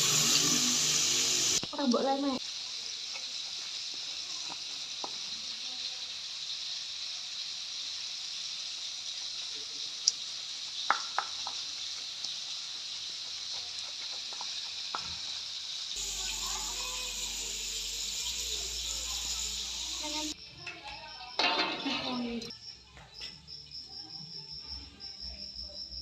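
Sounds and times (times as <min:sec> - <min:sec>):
food sizzling in hot oil: 0:00.0 - 0:22.6.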